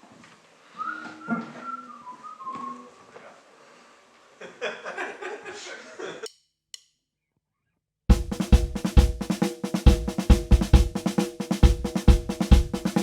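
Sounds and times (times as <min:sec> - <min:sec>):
drum kit beat: 0:08.1 - 0:13.0.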